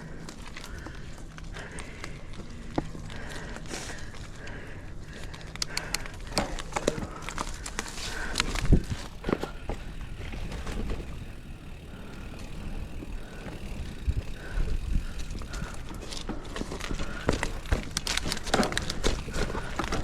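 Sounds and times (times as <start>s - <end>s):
bike rattling: 0.0s - 20.0s
bike tyres rolling on dirt: 0.0s - 20.0s
knocks and clatters over bumps: 5.2s - 20.0s.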